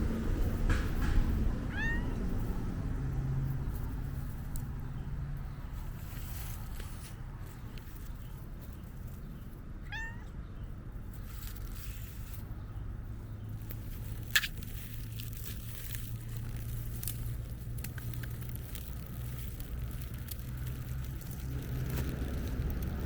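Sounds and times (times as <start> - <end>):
cat meowing: 1.7 - 2.3, 9.8 - 10.4.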